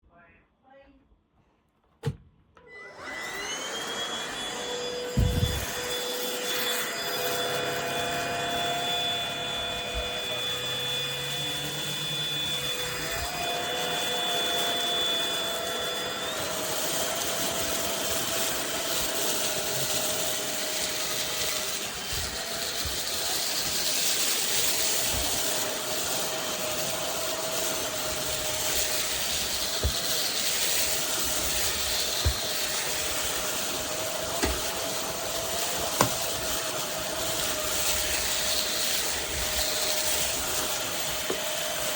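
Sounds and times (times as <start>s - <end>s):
thump: 2.0s - 2.4s, 5.2s - 5.6s
vacuum cleaner motor whine: 2.6s - 41.9s.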